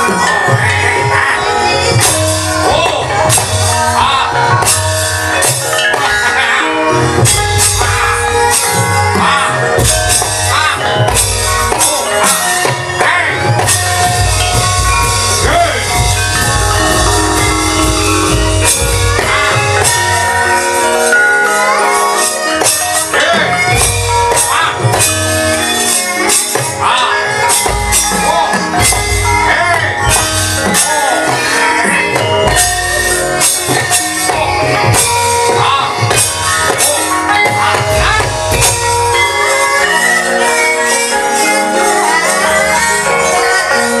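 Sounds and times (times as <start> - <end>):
metallophone tones: 0.0 - 44.0
percussion strokes: 0.0 - 44.0
person singing: 0.0 - 44.0.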